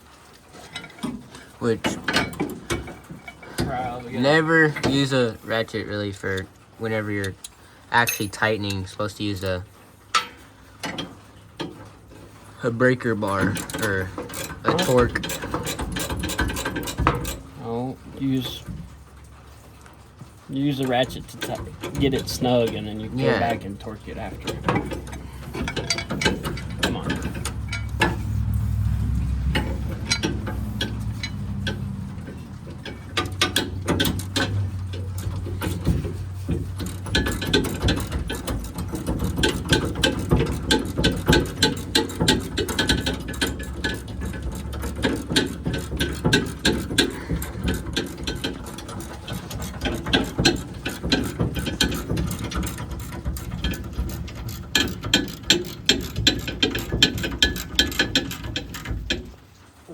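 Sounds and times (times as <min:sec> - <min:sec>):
low hum: 0:24.6 - 0:35.0.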